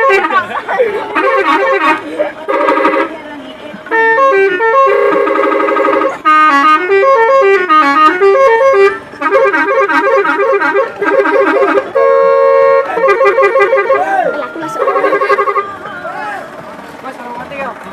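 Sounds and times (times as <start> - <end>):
truck musical horn tune: 0.0 - 3.3, 3.9 - 15.9.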